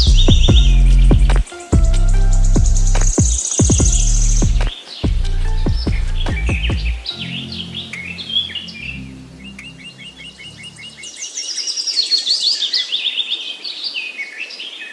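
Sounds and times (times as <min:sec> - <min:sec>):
low background music: 0:00.0 - 0:11.2
wild birds chirping and singing: 0:00.0 - 0:14.9.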